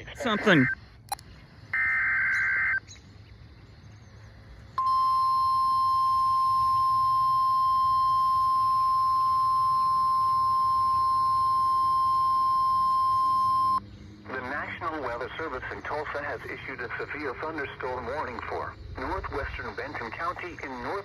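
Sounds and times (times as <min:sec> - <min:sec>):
radio hiss: 0:00.0 - 0:02.7, 0:06.5 - 0:21.0
steady alarm tone: 0:04.8 - 0:13.8.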